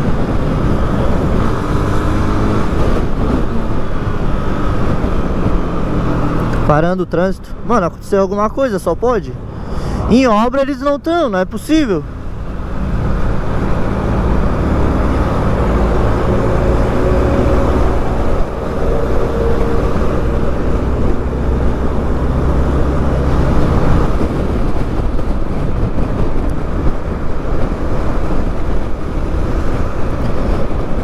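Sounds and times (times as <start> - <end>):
wind and road noise: 0.0 - 31.0
motorcycle engine running: 12.0 - 31.0.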